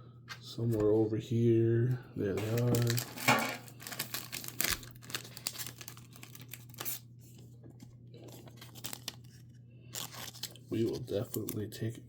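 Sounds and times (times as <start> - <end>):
low electrical hum: 0.0 - 12.0
plastic sleeves crinkling: 2.4 - 7.1, 8.2 - 11.9.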